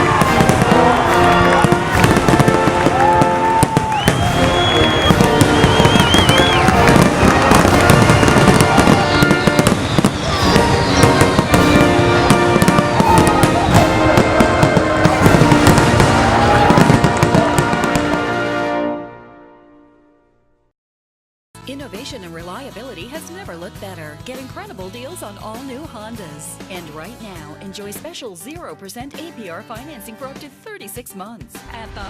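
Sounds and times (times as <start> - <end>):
fireworks bursting and crackling: 0.0 - 18.4
music playing: 0.0 - 20.0, 21.6 - 32.0.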